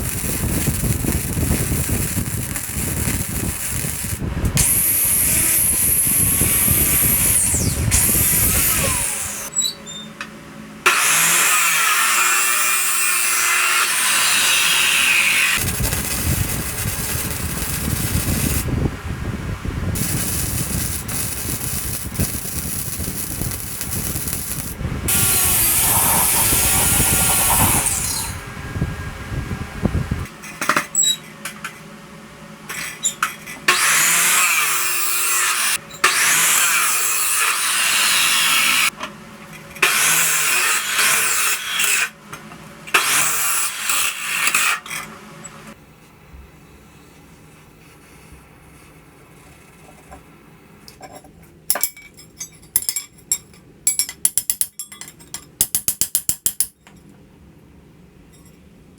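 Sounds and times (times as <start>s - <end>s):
angle grinder whining: 0.0s - 9.5s, 10.9s - 18.7s, 20.0s - 28.6s.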